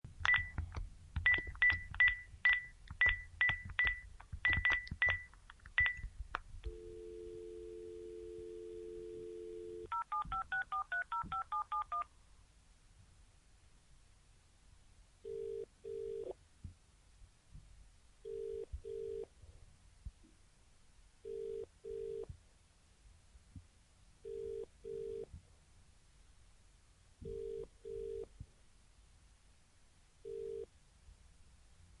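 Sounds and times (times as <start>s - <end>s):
telephone ringback tone: 6.7s - 12.0s.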